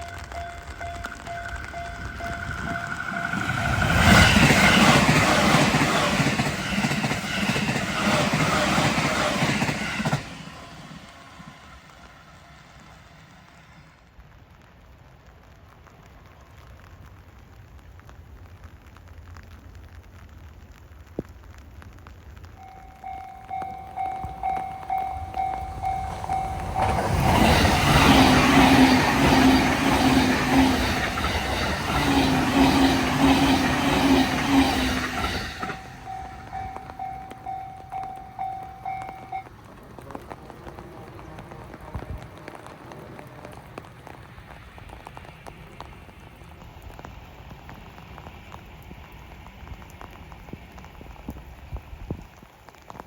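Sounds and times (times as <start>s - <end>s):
level-crossing bell clanging: 0.0s - 10.7s, 22.6s - 39.7s
train passing: 0.0s - 17.1s, 22.4s - 52.9s.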